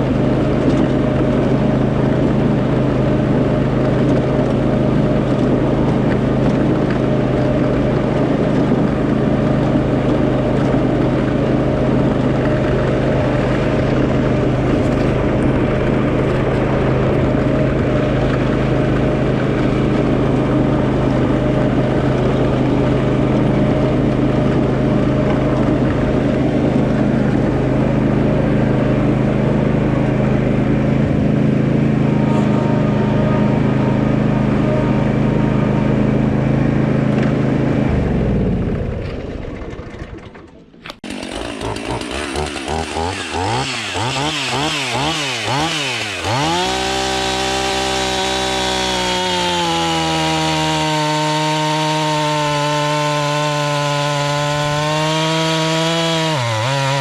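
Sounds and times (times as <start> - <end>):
chainsaw revving: 0.0 - 40.0, 40.8 - 57.0
low engine drone: 0.0 - 49.4.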